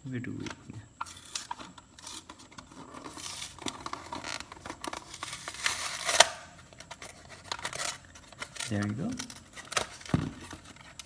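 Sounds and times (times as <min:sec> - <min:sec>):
plastic blister pack tearing: 0:01.0 - 0:11.0.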